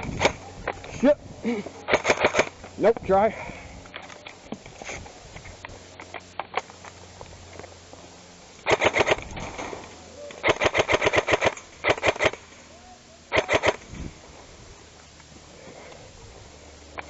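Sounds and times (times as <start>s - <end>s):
airsoft gun full-auto bursts: 1.9s - 2.6s, 8.6s - 9.6s, 10.4s - 12.6s, 13.3s - 13.9s
scattered clicks: 1.9s - 2.7s, 8.6s - 12.4s, 13.3s - 13.9s.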